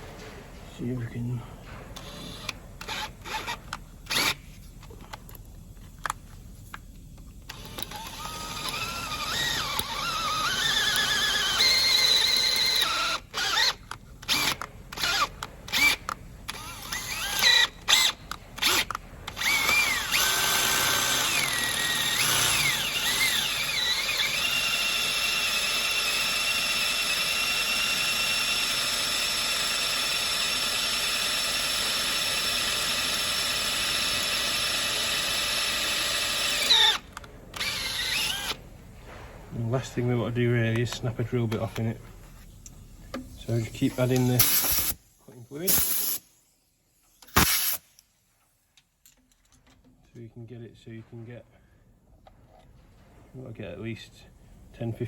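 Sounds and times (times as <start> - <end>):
electric drill bit squealing on metal: 7.7 - 16.0.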